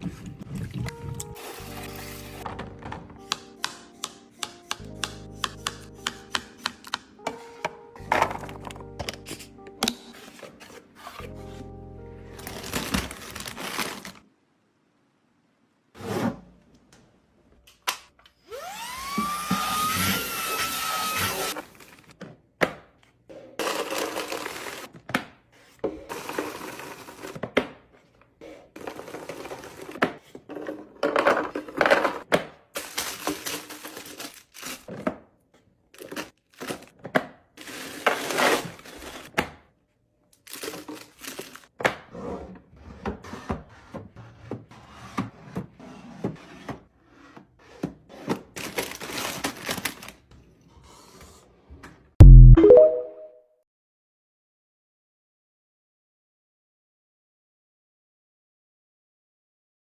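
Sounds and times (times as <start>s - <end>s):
packaging rustling: 12.4s - 14.3s, 32.8s - 34.9s, 40.4s - 41.7s, 48.6s - 50.2s
rising tone: 52.2s - 53.3s.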